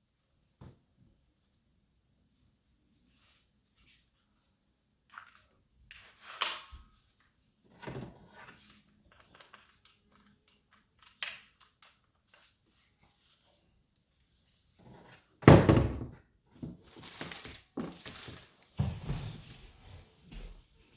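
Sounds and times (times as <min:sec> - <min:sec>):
packaging rustling: 0:16.6 - 0:18.8.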